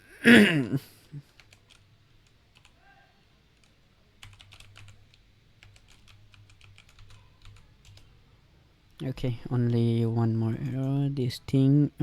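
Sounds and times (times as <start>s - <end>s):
computer keyboard typing: 1.3s - 2.8s, 3.6s - 8.1s.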